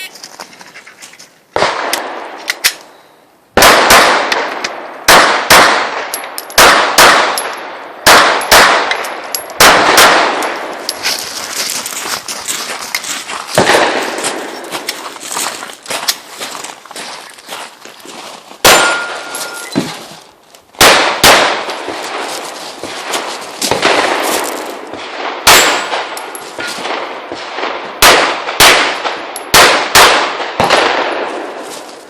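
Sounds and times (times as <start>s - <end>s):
pistol shots: 1.6s - 2.6s, 3.6s - 10.9s, 13.6s - 15.0s, 18.6s - 19.6s, 20.8s - 31.6s
bullets clanging on steel targets: 6.0s - 7.7s, 8.3s - 11.4s, 18.6s - 20.0s, 25.5s - 27.0s, 29.3s - 29.6s.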